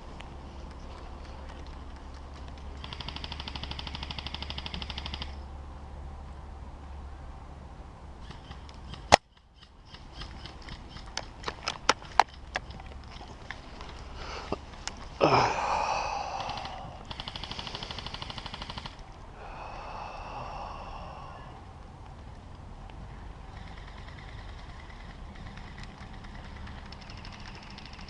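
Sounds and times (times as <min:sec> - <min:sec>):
airsoft full-auto burst: 0:02.8 - 0:05.4, 0:17.1 - 0:19.0.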